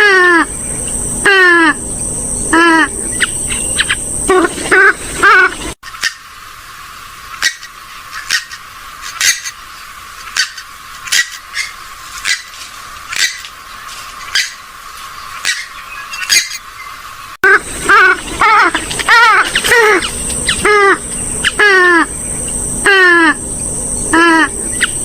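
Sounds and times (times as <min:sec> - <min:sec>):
steady hiss: 0:00.4 - 0:15.4
waterbird sharp calls: 0:07.3 - 0:09.6, 0:10.3 - 0:12.5, 0:14.3 - 0:23.4.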